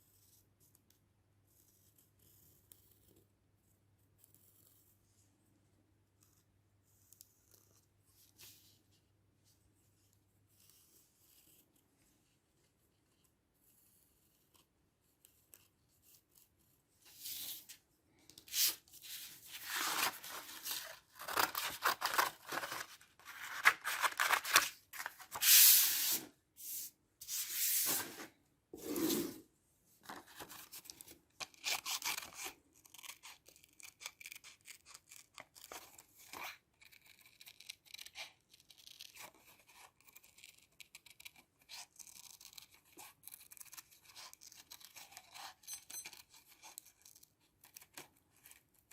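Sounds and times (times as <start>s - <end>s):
paper rubbing and scratching: 18.5s - 29.4s
paper rustling and tearing: 18.5s - 29.4s.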